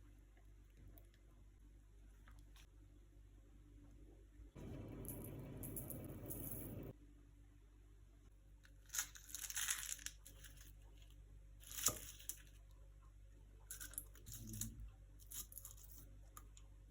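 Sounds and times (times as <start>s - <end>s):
puff pastry crackling and crunching: 8.6s - 12.7s.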